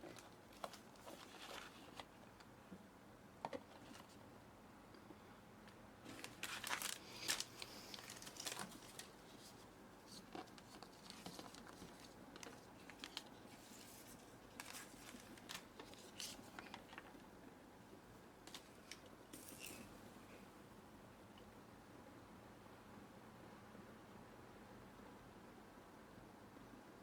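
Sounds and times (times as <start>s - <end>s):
packaging crinkling and tearing: 6.1s - 9.5s, 10.1s - 17.2s.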